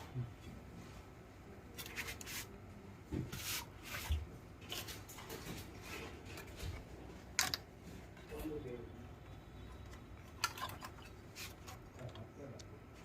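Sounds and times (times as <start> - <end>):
scraping and rubbing of computer parts: 1.7 - 2.6, 3.2 - 8.9, 9.6 - 12.3.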